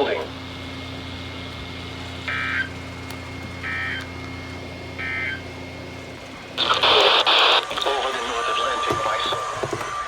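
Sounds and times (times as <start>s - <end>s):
loud radio static hiss: 6.6s - 10.0s.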